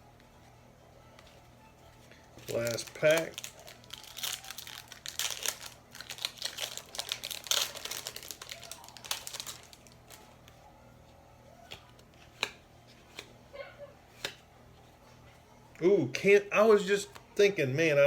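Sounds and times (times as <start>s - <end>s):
plastic wrapper tearing and crinkling: 2.4s - 10.3s.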